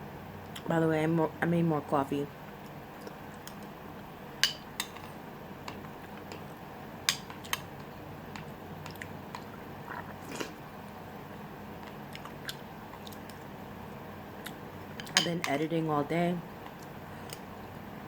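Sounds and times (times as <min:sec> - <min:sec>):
person chewing food: 0:02.6 - 0:03.7, 0:04.9 - 0:11.0, 0:11.7 - 0:13.6, 0:14.3 - 0:15.1.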